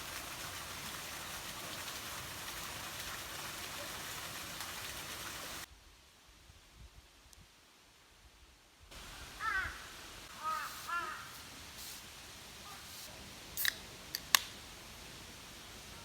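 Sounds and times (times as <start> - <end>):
background hiss: 0.0 - 16.0
crow cawing: 9.4 - 11.5
sharp clicks: 13.6 - 14.6.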